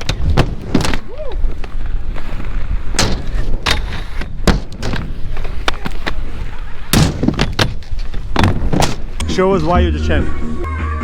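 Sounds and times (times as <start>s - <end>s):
skate wheels rolling on concrete: 0.0s - 11.0s
sharp clacks and thuds: 2.9s - 6.1s.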